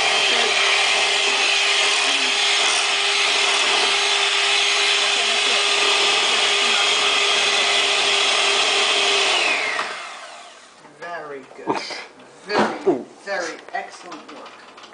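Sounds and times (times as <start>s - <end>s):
electric hand mixer whirring: 0.0s - 10.8s.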